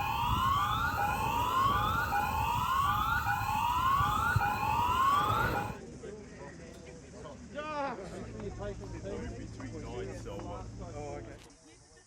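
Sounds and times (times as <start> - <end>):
warning siren wailing: 0.0 - 5.8.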